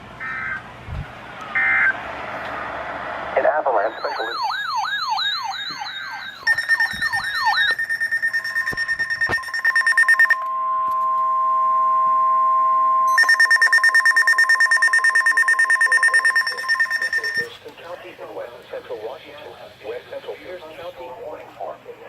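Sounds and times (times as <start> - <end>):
warbling siren alarm: 1.5 - 2.0, 3.4 - 17.5
steady warning tone: 3.3 - 21.4
fast high-pitched beeping alarm: 3.6 - 10.8, 13.1 - 17.6.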